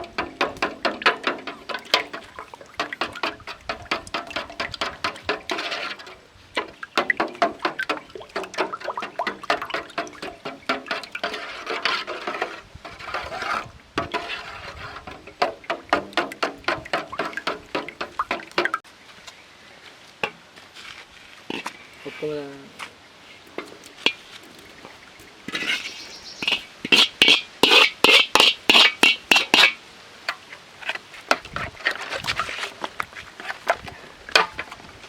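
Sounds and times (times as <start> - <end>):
liquid egg sloshing: 0.0 - 18.8
utensil clinking against bowl: 0.0 - 18.8.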